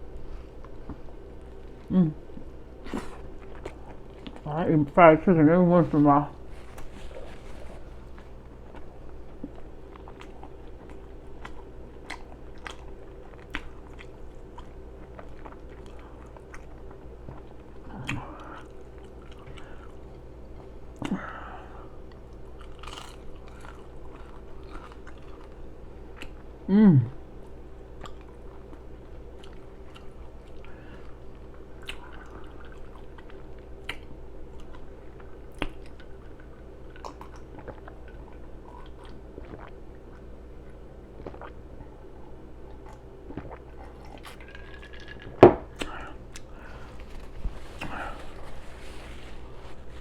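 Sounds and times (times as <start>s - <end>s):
chewing with wet mouth clicks: 8.0s - 20.0s, 22.1s - 26.4s, 27.9s - 41.6s, 42.6s - 46.8s
person burping: 26.7s - 27.2s.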